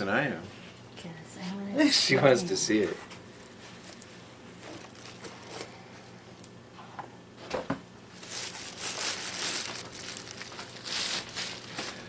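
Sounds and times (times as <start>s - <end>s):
wrapping rustling and crinkling: 3.4s - 5.8s, 8.1s - 12.0s.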